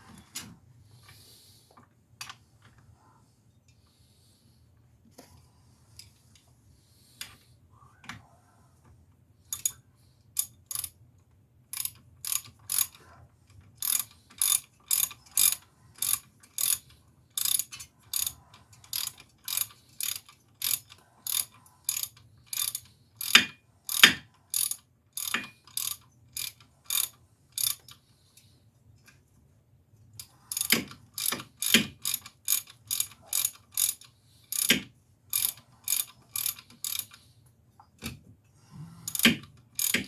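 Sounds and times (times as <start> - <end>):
ratchet wrench clicking: 9.5 - 9.8, 10.4 - 10.9, 11.8 - 13.0, 13.8 - 16.8, 17.4 - 28.0, 30.5 - 37.2, 39.1 - 40.0.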